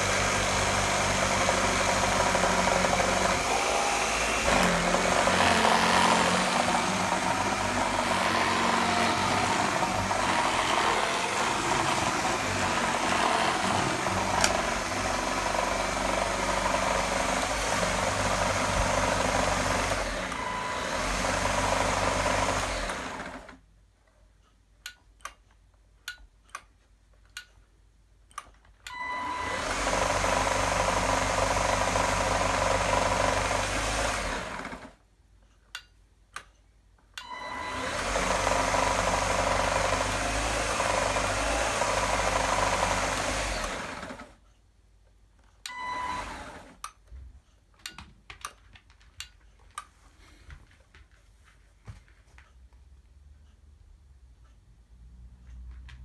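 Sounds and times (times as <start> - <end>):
vacuum cleaner motor running: 0.0 - 23.6, 29.1 - 35.0, 37.4 - 44.4, 45.8 - 46.8.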